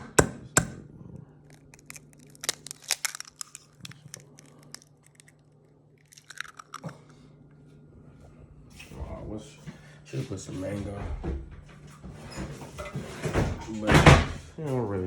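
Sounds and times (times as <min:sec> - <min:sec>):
faint low hum: 0:00.0 - 0:15.0
dog food crunching and crinkling: 0:01.4 - 0:07.2.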